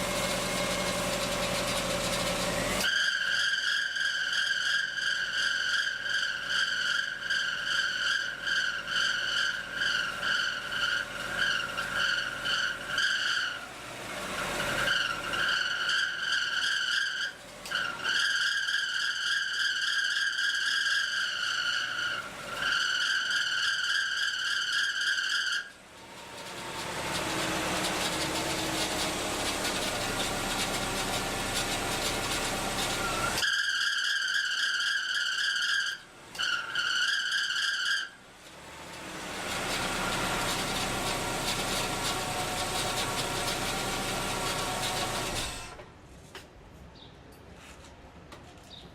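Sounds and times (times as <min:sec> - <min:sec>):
high-pitched engine squeal: 0:00.0 - 0:45.9.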